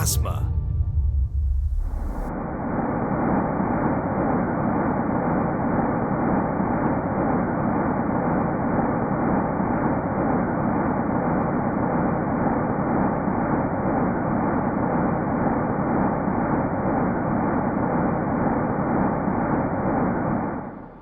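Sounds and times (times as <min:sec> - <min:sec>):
low rumbling hum: 0:00.0 - 0:04.3.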